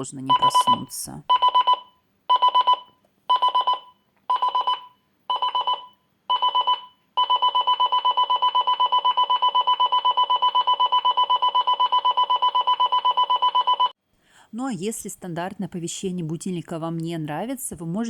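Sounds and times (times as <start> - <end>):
clock radio alarm beeping: 0.0 - 13.9.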